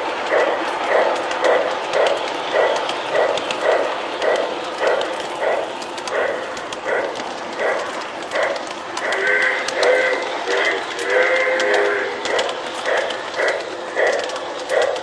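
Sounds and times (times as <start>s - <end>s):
faint clicks from track: 0.1s - 15.0s
electronic steam chuffs: 9.0s - 14.9s.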